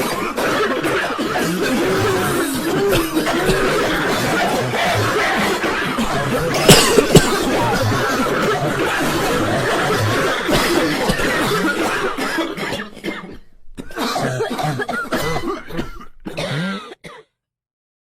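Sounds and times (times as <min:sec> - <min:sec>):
person coughing heavily: 0:06.0 - 0:08.6, 0:09.8 - 0:17.3.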